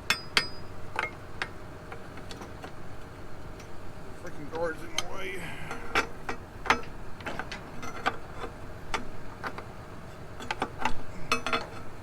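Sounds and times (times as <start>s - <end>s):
hand tools clinking on metal: 10.4s - 11.8s.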